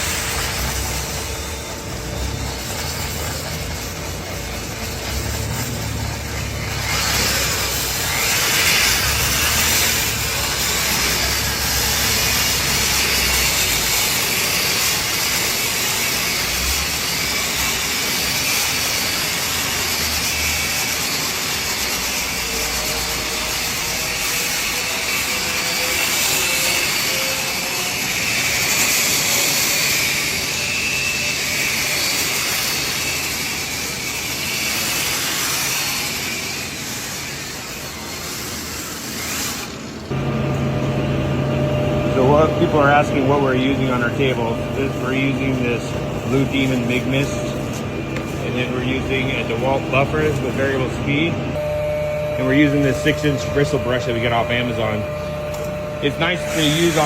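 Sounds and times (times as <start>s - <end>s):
bristle brush scrubbing steel: 0.0s - 40.3s, 41.0s - 51.3s, 55.9s - 57.0s
buffer motor hum: 40.1s - 57.0s.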